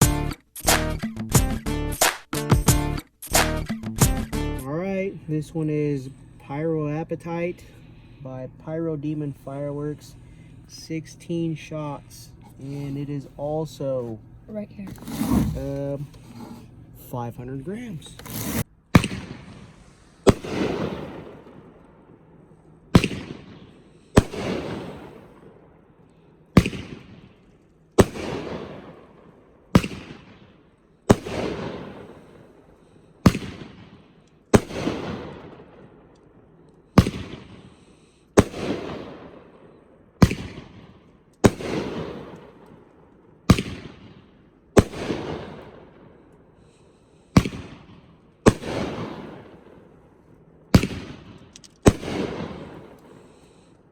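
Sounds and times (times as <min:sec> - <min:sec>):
firework cake bangs: 0:19.0 - 0:21.4, 0:23.0 - 0:23.6, 0:24.2 - 0:25.2, 0:26.6 - 0:27.2, 0:28.0 - 0:28.8, 0:29.8 - 0:30.4, 0:31.1 - 0:32.2, 0:33.3 - 0:33.9, 0:34.6 - 0:35.4, 0:37.0 - 0:37.6, 0:38.4 - 0:39.1, 0:41.5 - 0:42.4, 0:43.5 - 0:44.1, 0:44.8 - 0:45.6, 0:47.4 - 0:47.8, 0:48.5 - 0:49.3.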